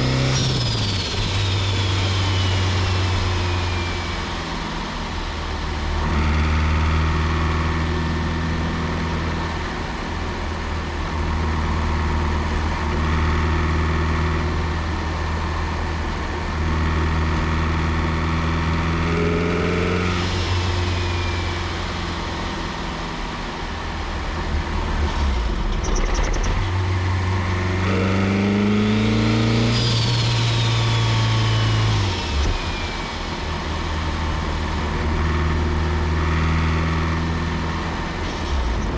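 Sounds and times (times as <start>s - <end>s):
car engine revving: 0.0s - 38.9s
turbo whistle: 19.1s - 23.5s, 27.8s - 35.4s.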